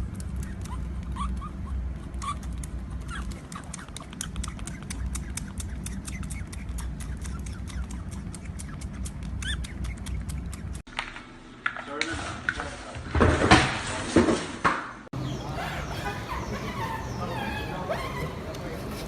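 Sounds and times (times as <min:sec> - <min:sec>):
small animal chirping: 0:00.0 - 0:10.8
rapid clicks: 0:02.0 - 0:10.8.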